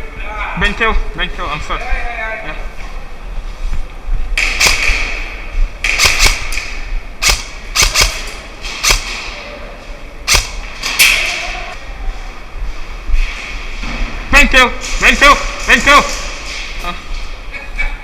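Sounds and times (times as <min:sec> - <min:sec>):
airsoft gun cracks: 0:04.4 - 0:05.2, 0:05.8 - 0:09.2, 0:10.3 - 0:11.3.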